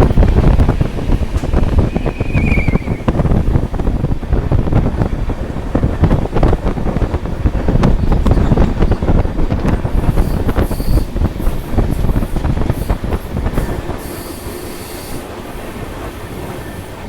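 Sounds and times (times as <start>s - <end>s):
train clattering over rails: 0.0s - 17.0s
wind buffeting microphone: 0.0s - 17.0s
brief high squeal: 1.9s - 3.1s.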